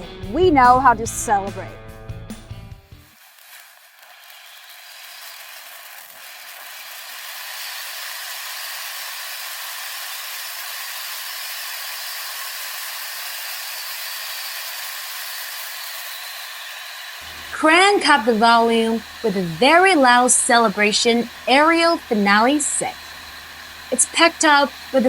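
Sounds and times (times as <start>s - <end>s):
steady hiss: 17.2s - 25.0s.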